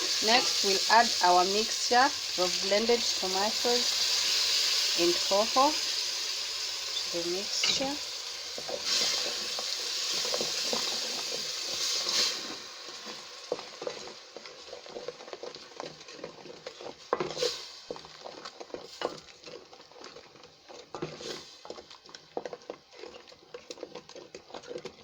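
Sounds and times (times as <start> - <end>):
spoon scraping metal pot: 0.0 - 0.8, 6.8 - 8.0
light sizzle: 0.0 - 22.5.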